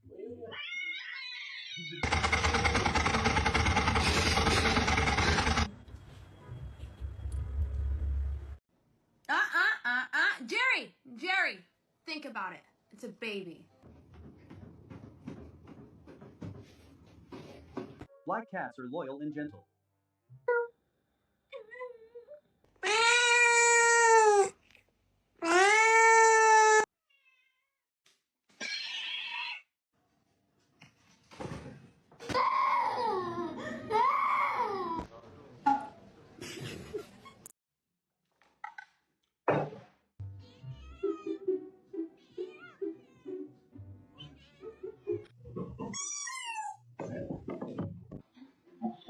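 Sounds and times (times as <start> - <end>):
cat meowing: 0.5 - 2.0.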